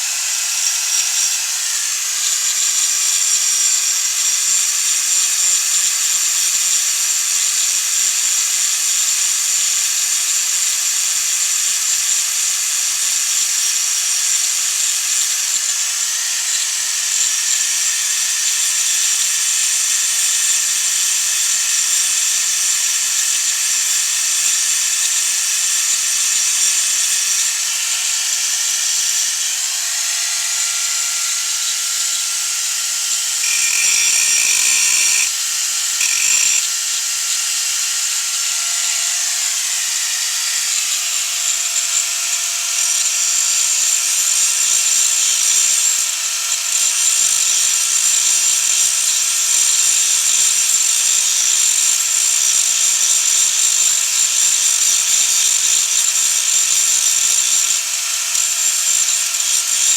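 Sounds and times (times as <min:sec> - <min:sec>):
electric grinder grinding metal: 0:00.0 - 0:59.9.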